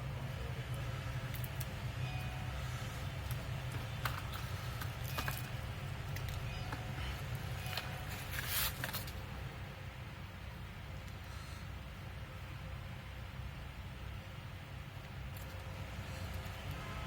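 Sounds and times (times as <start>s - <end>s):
steady low hum: 0.0s - 17.0s
rustling scrape: 8.0s - 9.1s.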